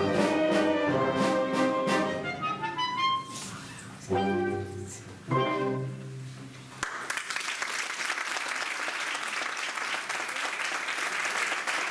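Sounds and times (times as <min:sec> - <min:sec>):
orchestral chord: 0:00.0 - 0:03.3, 0:04.0 - 0:06.3
audience applause: 0:06.8 - 0:11.9.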